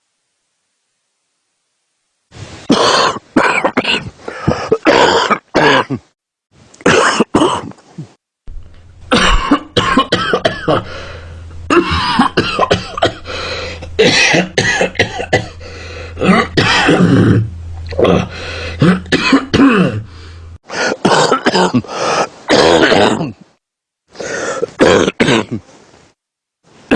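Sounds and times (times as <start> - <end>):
man coughing: 2.7 - 6.1, 6.8 - 7.8, 9.1 - 21.9, 24.8 - 25.6
low hum: 8.5 - 20.6.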